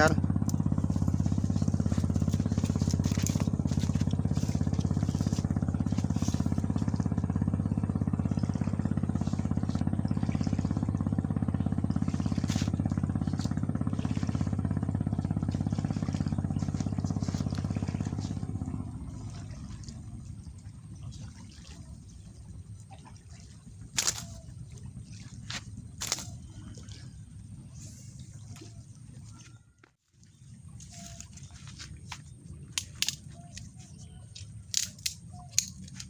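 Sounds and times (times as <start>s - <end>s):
small engine running: 0.0s - 28.7s.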